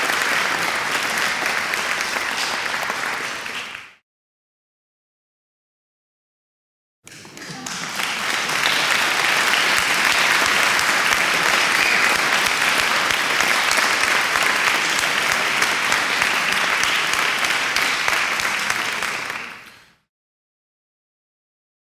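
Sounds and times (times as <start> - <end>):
crowd applauding: 0.0 - 4.0, 7.1 - 20.0.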